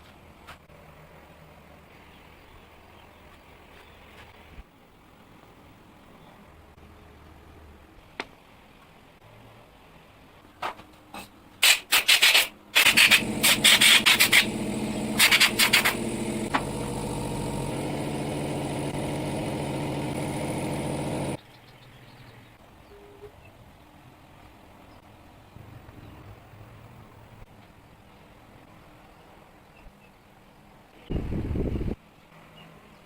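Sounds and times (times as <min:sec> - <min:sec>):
harsh scraping: 0:12.8 - 0:21.4
small motor running: 0:12.8 - 0:21.4.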